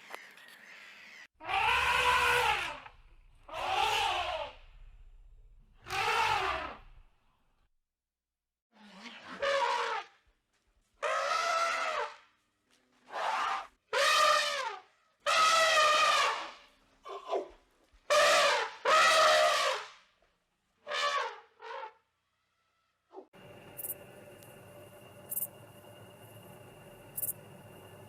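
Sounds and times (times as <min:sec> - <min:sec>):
steady low hum: 0:23.4 - 0:28.0.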